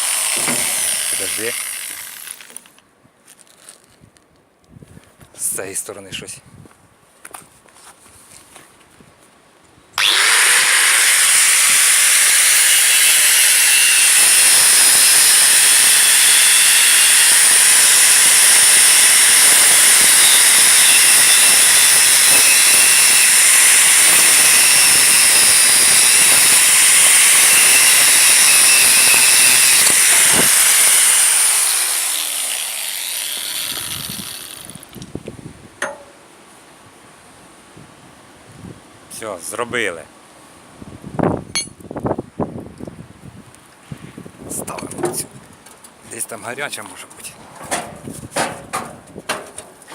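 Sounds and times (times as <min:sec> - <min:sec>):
angle grinder on steel: 0:00.0 - 0:02.6, 0:10.0 - 0:35.0.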